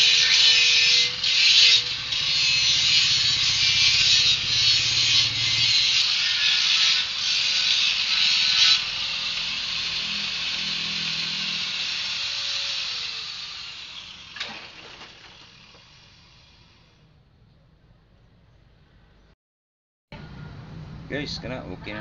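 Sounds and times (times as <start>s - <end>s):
power tool grinding metal: 0.0s - 17.0s.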